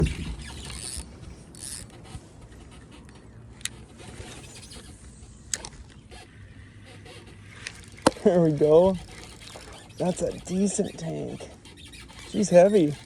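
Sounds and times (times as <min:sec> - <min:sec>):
fishing reel clicks: 0:00.0 - 0:13.0
fishing reel rasping: 0:00.0 - 0:13.0.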